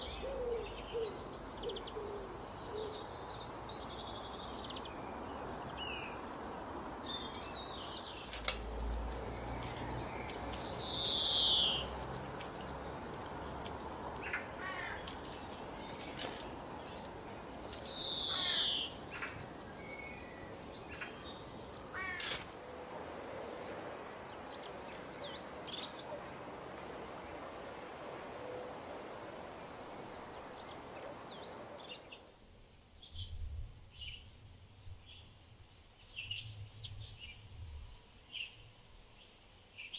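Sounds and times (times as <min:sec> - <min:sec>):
steady background hiss: 0:00.0 - 0:39.9
wild birds chirping: 0:00.0 - 0:39.9
harsh downward-sweeping bird calls: 0:17.9 - 0:22.4.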